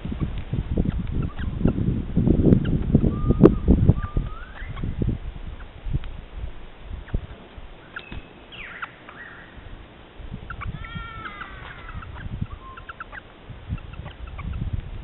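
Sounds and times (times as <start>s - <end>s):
birds chirping: 0.2s - 14.7s
harsh bird call: 7.8s - 9.6s, 10.5s - 13.3s.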